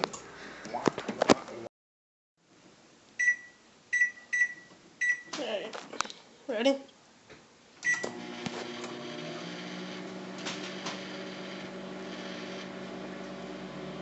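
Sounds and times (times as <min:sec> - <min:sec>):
microwave beep: 0:03.2 - 0:05.3, 0:07.8 - 0:13.0
microwave oven humming: 0:07.9 - 0:14.0.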